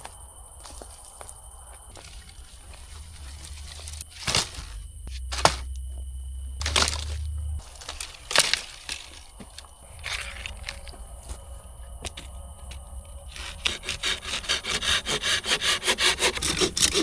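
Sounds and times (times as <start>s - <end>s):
dry wood snapping: 3.2s - 5.9s, 6.6s - 17.0s.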